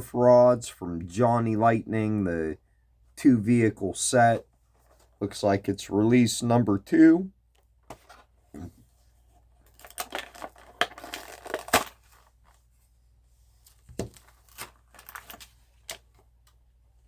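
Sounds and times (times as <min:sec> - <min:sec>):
plastic packaging ripping: 0:09.7 - 0:12.1, 0:14.2 - 0:15.4.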